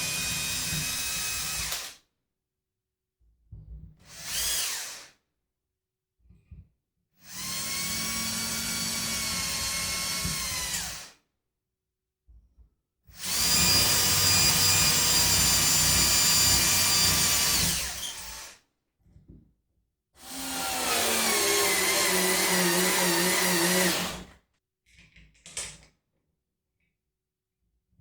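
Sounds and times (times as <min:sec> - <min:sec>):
electric drill motor whining: 0:07.3 - 0:11.1, 0:13.2 - 0:18.5, 0:20.2 - 0:24.2.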